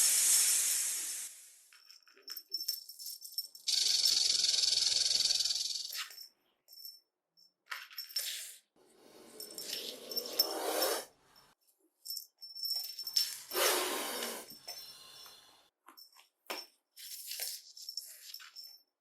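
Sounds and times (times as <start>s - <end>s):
snake hissing: 0.0s - 1.6s, 13.5s - 14.6s.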